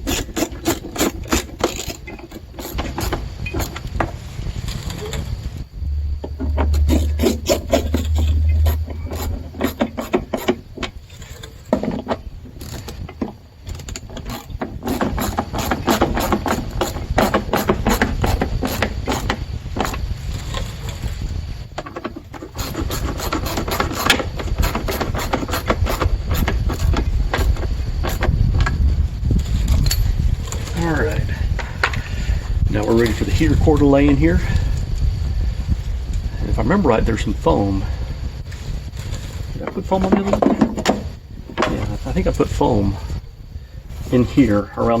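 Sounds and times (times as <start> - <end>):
rapid clicking and scraping: 0.0 - 5.4, 6.2 - 34.8
low hum: 0.0 - 45.0.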